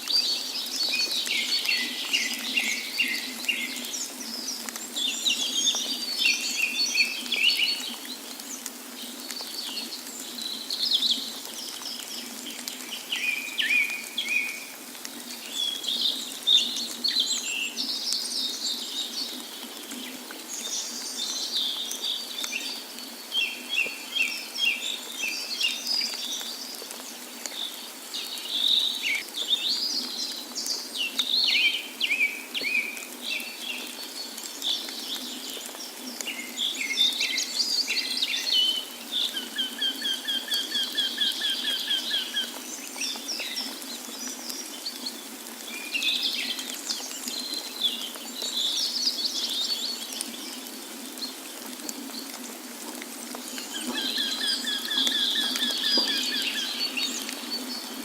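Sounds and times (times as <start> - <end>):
birds chirping and trilling: 53.6 - 58.0.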